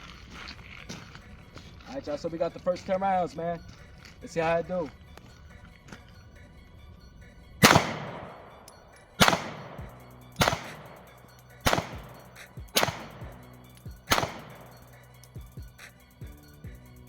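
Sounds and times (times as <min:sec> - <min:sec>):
pistol shots with echo: 0:07.6 - 0:15.2.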